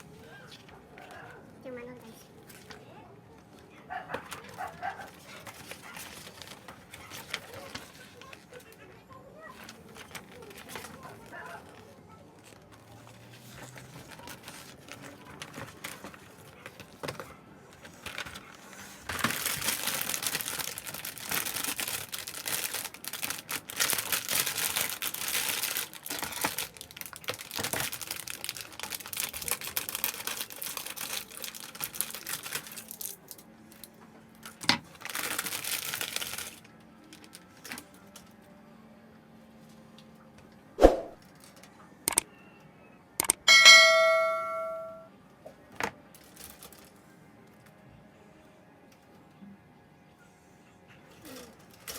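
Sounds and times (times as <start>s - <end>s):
faint music: 0.0s - 51.9s
plastic packaging crinkling: 4.3s - 8.8s, 9.5s - 38.3s, 46.2s - 47.0s
sharp click: 43.2s - 43.4s.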